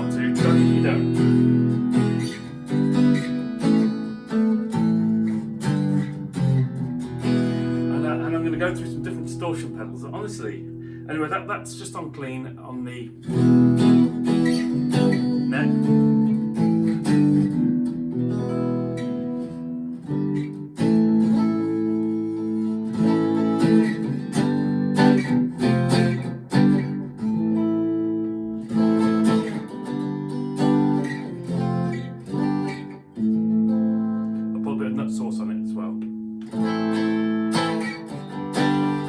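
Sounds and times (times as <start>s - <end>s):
clean electric guitar noodling: 0.0s - 27.0s.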